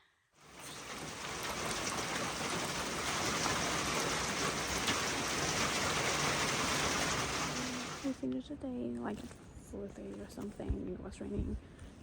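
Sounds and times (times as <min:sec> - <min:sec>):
heavy rain falling: 0:00.4 - 0:08.2.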